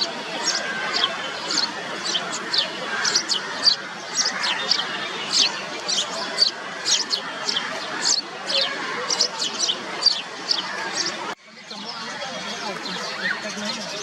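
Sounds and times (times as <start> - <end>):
sparrows chirping: 0.0 - 14.0.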